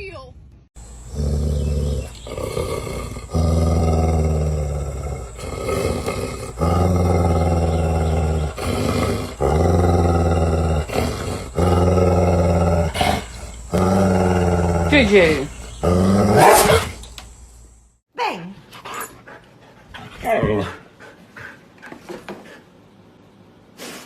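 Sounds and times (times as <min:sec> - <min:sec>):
dog growling: 0:00.8 - 0:17.1.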